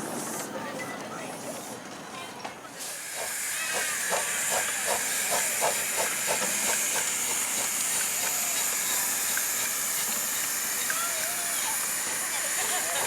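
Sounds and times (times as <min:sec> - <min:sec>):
steam hissing: 0:02.8 - 0:13.0
steam locomotive regular beats: 0:02.8 - 0:13.0.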